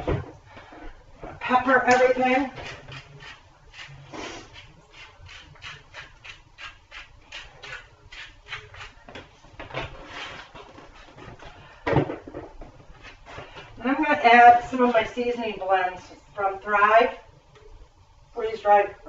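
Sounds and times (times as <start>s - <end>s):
pepper grinder scratching: 2.6s - 9.1s.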